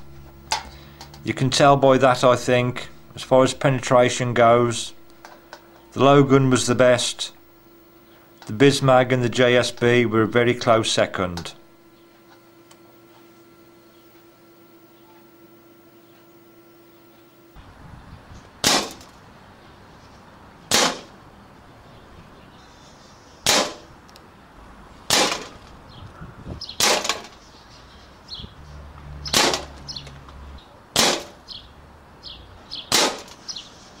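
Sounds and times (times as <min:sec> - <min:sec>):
air rifle shots: 0:18.6 - 0:19.1, 0:20.7 - 0:21.1, 0:23.4 - 0:23.9, 0:25.1 - 0:25.5, 0:26.8 - 0:27.3, 0:29.3 - 0:29.7, 0:31.0 - 0:31.4, 0:32.9 - 0:33.4.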